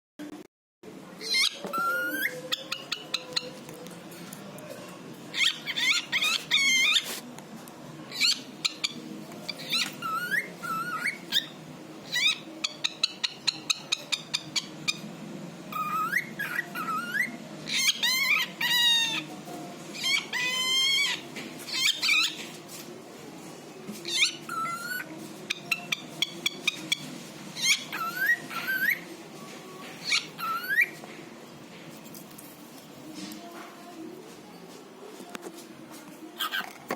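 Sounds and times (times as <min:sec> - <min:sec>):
cockatiel whistling and chattering: 0:01.2 - 0:03.6, 0:05.3 - 0:07.1, 0:08.1 - 0:15.0, 0:15.7 - 0:19.3, 0:20.0 - 0:22.4, 0:24.0 - 0:29.1, 0:30.0 - 0:31.0, 0:36.4 - 0:36.6.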